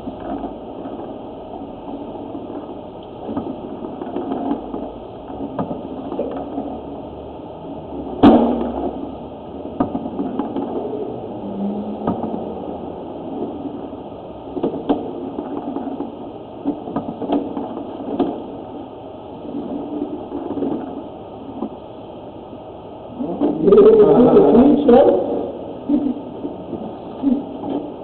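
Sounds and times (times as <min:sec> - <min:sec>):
knocks and clicks of cable: 0:09.8 - 0:10.8, 0:14.6 - 0:18.4.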